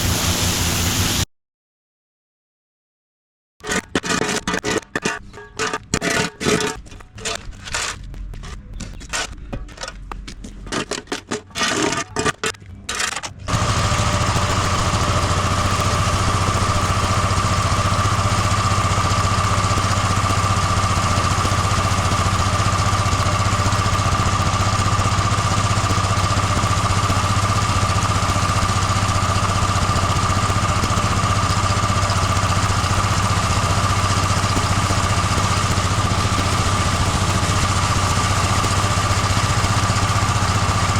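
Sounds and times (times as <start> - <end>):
pressure washer engine running: 0.0 - 1.2, 13.5 - 40.9.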